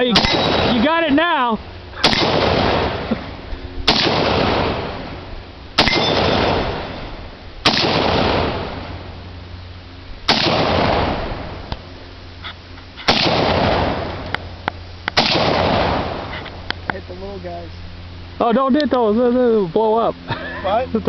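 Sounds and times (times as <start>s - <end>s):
gunshots with echoing decay: 0.0s - 1.1s, 2.0s - 3.2s, 3.9s - 5.1s, 5.8s - 9.0s, 10.3s - 11.5s, 13.1s - 14.3s, 15.1s - 16.4s.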